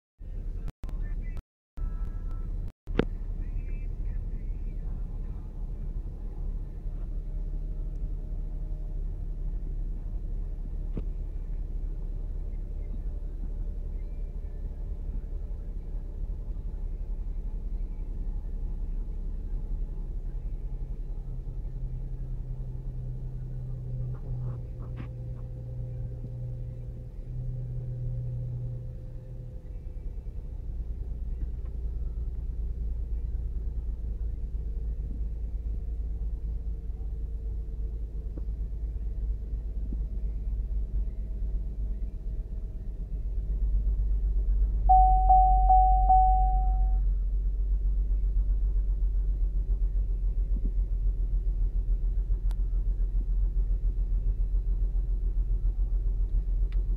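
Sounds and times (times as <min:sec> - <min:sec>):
car engine low rumble: 0:00.2 - 0:56.9
steady beep: 0:44.9 - 0:47.0.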